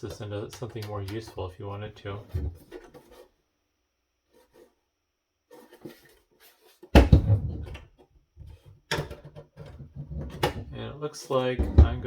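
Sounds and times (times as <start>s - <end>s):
hands rubbing and tapping metal: 0.0s - 1.4s.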